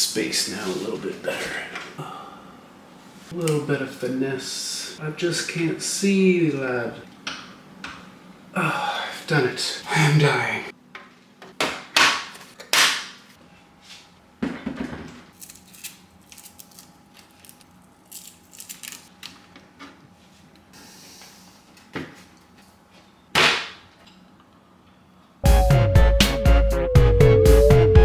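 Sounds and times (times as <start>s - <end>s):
electronic music: 25.4s - 28.0s.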